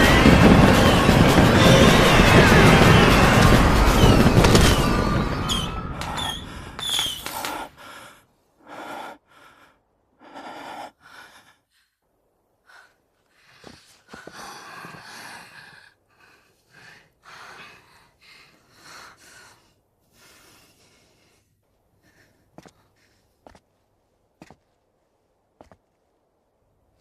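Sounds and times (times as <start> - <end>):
loud crash: 0.0 - 7.3
people panting and gasping: 0.0 - 23.7.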